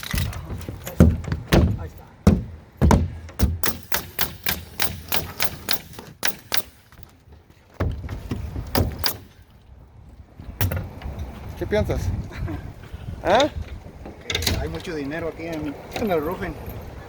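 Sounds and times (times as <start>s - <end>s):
nail gun firing: 2.3s - 7.0s, 8.7s - 9.4s.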